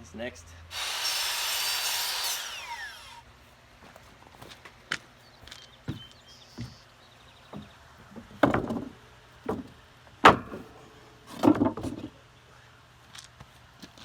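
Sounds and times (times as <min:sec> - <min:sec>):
sharp knocks: 0:08.3 - 0:08.9, 0:09.5 - 0:10.7.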